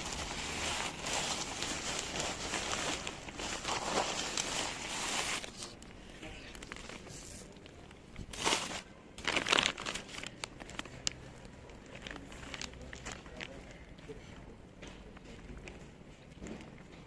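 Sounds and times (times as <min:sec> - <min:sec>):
packaging crinkling and rustling: 0:00.0 - 0:13.6.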